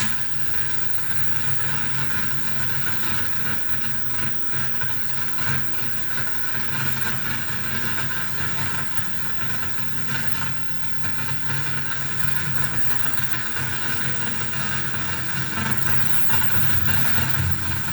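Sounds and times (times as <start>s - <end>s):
hissing drone: 14.0s - 17.9s
low wavering rumble: 14.4s - 17.9s.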